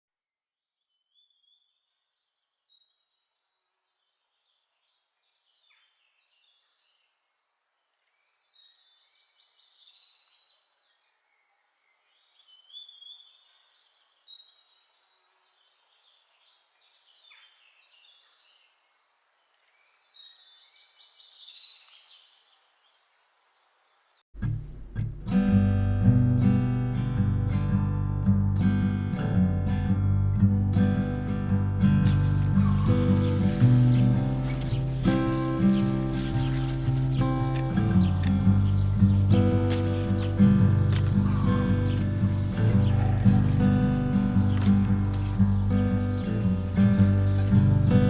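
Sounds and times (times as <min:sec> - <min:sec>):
songbirds chirping: 0:00.8 - 0:24.3, 0:26.9 - 0:48.0
strummed acoustic guitar music: 0:24.4 - 0:48.0.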